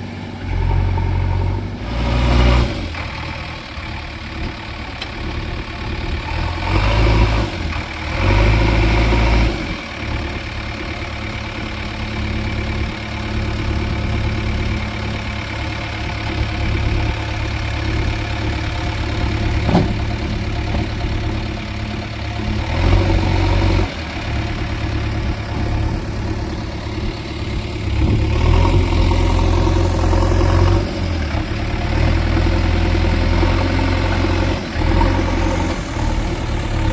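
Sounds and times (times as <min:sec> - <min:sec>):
diesel engine revving: 0:00.0 - 0:36.9
sharp knock: 0:19.6 - 0:20.1.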